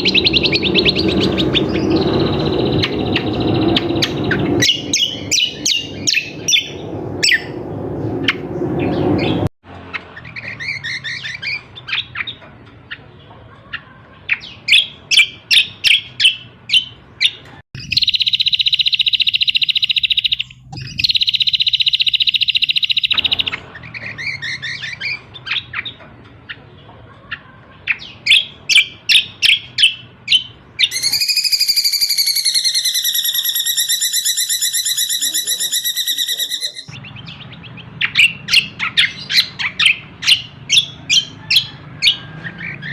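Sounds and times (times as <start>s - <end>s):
long buzzy bird trills: 0.0s - 9.5s, 27.9s - 42.9s
pulsing wavering bird trill: 0.0s - 9.5s, 28.3s - 37.0s
sharp high bird chirps: 0.0s - 9.5s, 14.4s - 26.0s, 27.9s - 42.9s.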